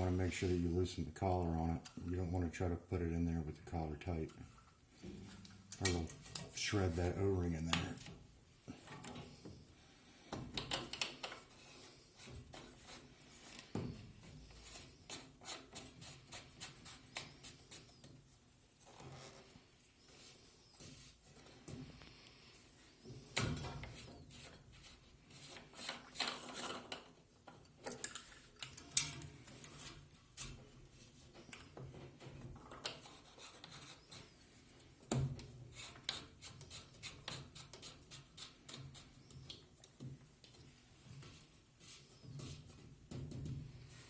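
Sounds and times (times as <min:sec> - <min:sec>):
plumbing fittings clicking and knocking: 0:10.3 - 0:11.4.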